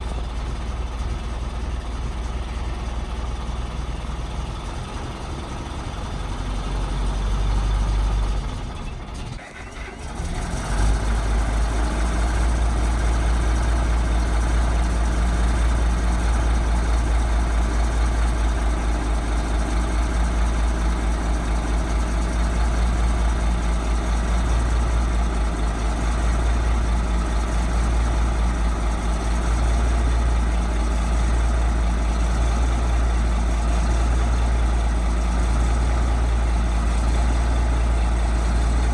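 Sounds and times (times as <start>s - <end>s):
bulldozer diesel engine idling: 0.0s - 38.9s.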